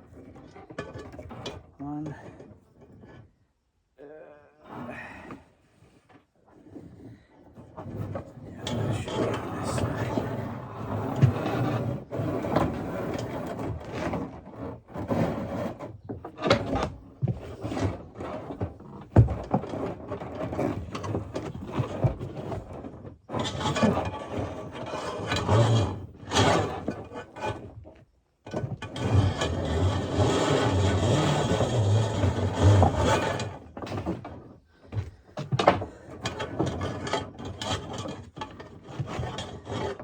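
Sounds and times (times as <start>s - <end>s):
metal parts clanking and scraping: 8.0s - 14.4s, 28.5s - 40.0s.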